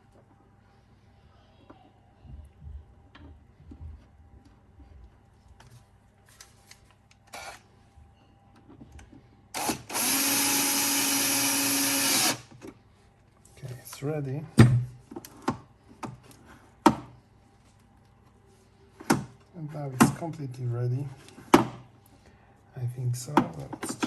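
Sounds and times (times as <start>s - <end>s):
cordless screwdriver running: 9.6s - 12.4s.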